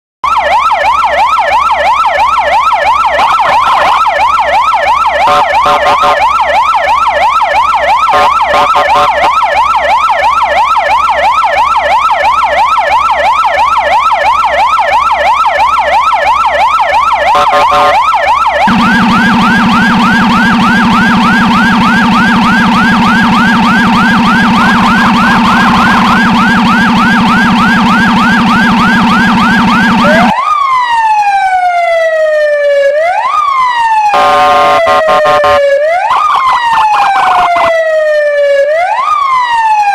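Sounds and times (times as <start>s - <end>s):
emergency siren yelping: 0.2s - 39.9s.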